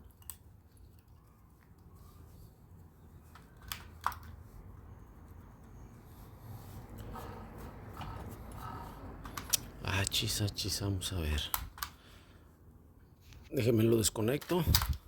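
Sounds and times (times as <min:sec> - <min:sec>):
light clicks and taps of tools: 0:00.0 - 0:02.0.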